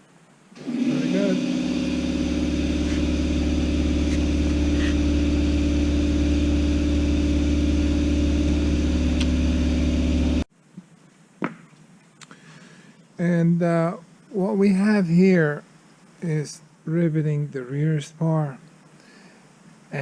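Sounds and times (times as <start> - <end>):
motor humming: 0.6 - 10.5.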